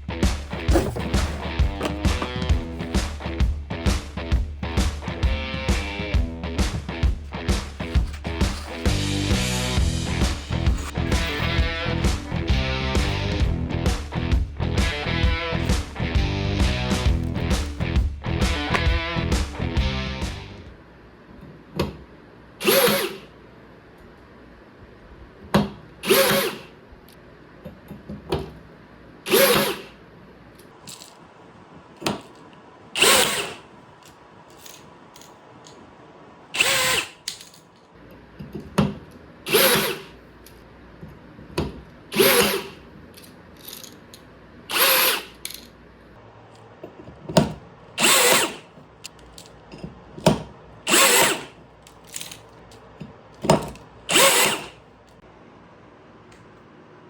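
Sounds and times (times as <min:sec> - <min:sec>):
handling clicks and knocks: 0:00.5 - 0:03.0
rivet gun motor running: 0:10.3 - 0:11.7, 0:22.6 - 0:23.3, 0:26.0 - 0:26.7, 0:29.3 - 0:30.0, 0:33.0 - 0:33.6, 0:36.6 - 0:37.2, 0:39.5 - 0:40.1, 0:42.1 - 0:42.8, 0:44.7 - 0:45.4, 0:48.0 - 0:48.7, 0:50.9 - 0:51.6, 0:54.1 - 0:54.8.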